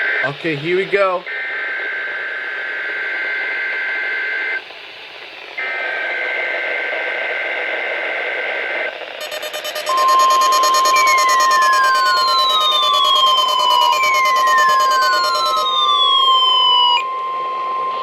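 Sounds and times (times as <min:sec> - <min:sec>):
two-tone data warble: 0:09.1 - 0:18.0
falling tones: 0:09.2 - 0:18.0
steady warning alarm tone: 0:09.2 - 0:18.0.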